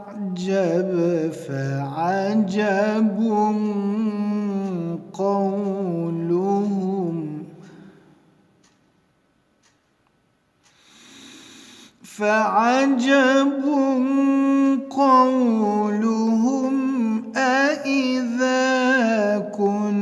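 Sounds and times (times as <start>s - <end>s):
man reciting melodically: 0.0s - 8.2s, 10.9s - 20.0s
soft intake of breath: 10.7s - 12.1s.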